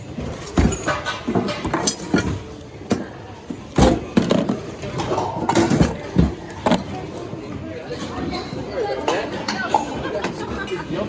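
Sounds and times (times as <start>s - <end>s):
goods clattering and knocking: 0.1s - 7.1s.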